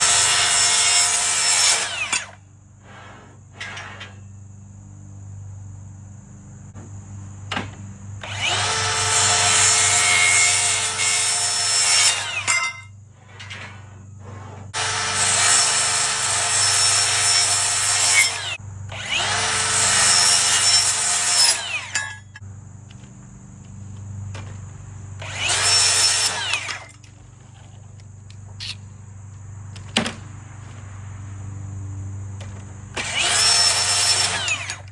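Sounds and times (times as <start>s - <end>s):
circular saw cutting: 0.0s - 4.3s, 8.2s - 22.4s, 25.2s - 27.9s, 32.4s - 34.9s.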